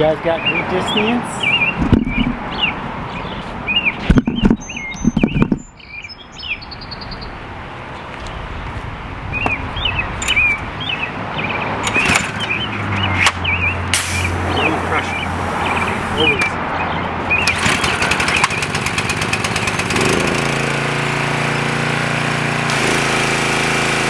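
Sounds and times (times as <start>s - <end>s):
songbirds chirping: 0.0s - 18.9s.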